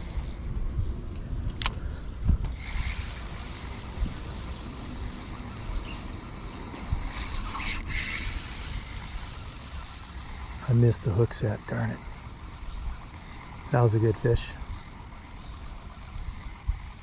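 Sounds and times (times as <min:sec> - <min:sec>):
low rumble: 0:00.0 - 0:10.7
sharp click: 0:01.1 - 0:01.8.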